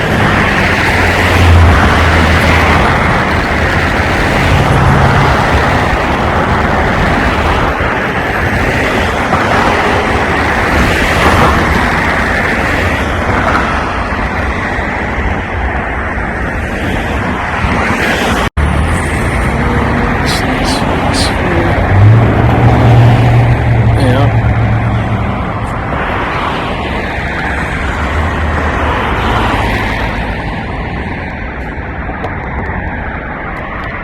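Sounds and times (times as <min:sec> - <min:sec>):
road traffic rumble: 0:00.0 - 0:34.0
wind buffeting microphone: 0:00.0 - 0:34.0.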